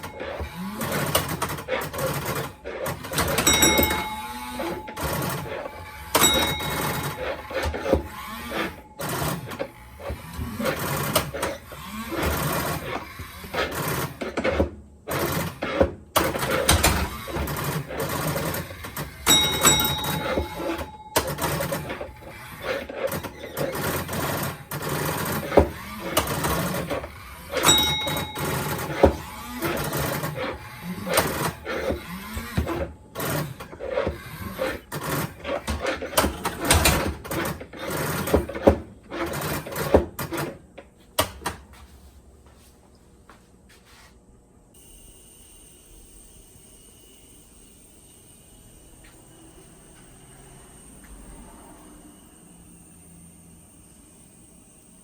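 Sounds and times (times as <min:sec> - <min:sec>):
clattering relays and mechanisms: 0:00.0 - 0:42.0
steady electronic tone: 0:44.8 - 0:55.0.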